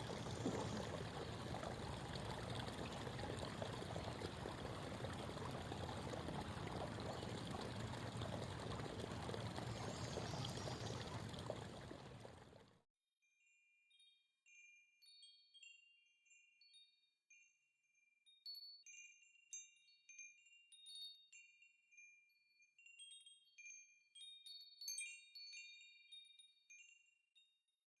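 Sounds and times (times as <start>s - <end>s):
creek water babbling over stones: 0.0s - 12.6s.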